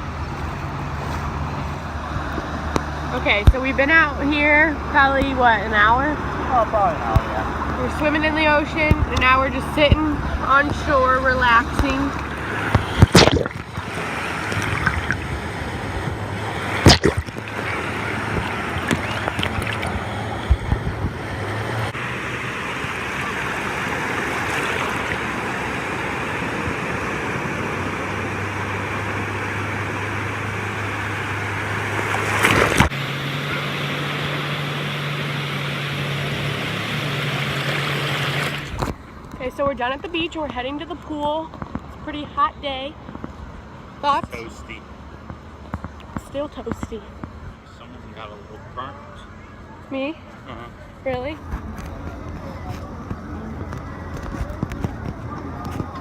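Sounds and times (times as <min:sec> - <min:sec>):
ocean surf on beach: 0:09.3 - 0:39.2.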